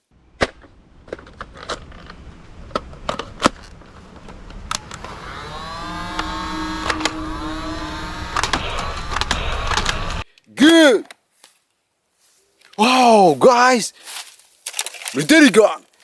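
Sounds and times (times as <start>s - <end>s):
electric motor whirring: 4.7s - 10.2s.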